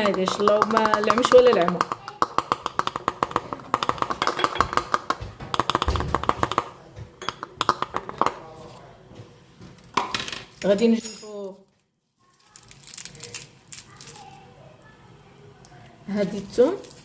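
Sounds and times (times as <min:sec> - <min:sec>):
dried herbs clicking in glass bottle: 0:00.0 - 0:06.7.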